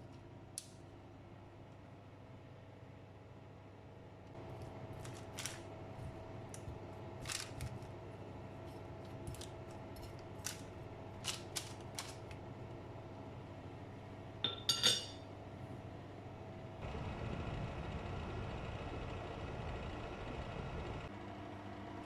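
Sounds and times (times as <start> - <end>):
faint hum: 0.0 - 22.0
ringing clink: 14.4 - 15.2.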